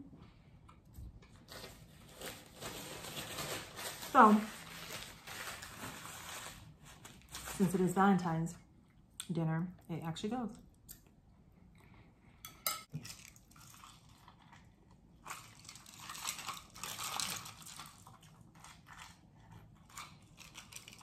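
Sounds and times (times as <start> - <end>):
crunchy chewing: 12.9 - 21.0.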